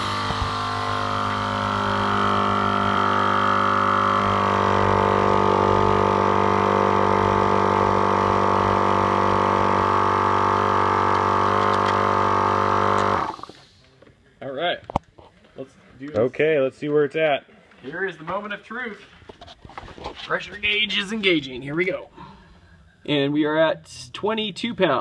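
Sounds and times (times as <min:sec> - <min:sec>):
air compressor running: 0:00.0 - 0:13.8.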